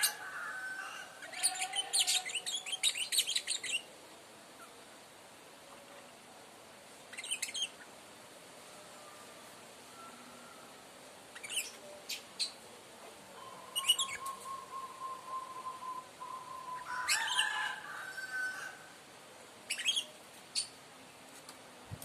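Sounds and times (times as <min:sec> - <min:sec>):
bird chirping: 0:07.1 - 0:07.9, 0:11.3 - 0:12.6, 0:13.4 - 0:17.5, 0:19.7 - 0:20.8
bird whistling steady note: 0:09.9 - 0:10.7, 0:13.4 - 0:17.6.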